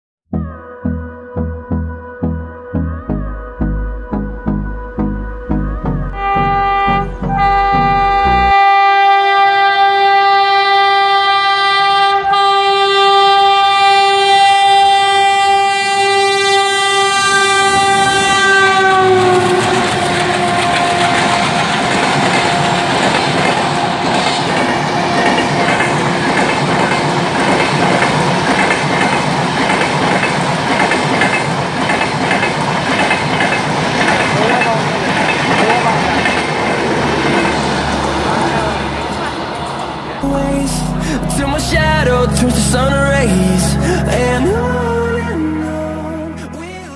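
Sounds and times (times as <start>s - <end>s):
locomotive horn blast: 6.0s - 28.6s
train wheels clacking over rail joints: 19.2s - 38.2s.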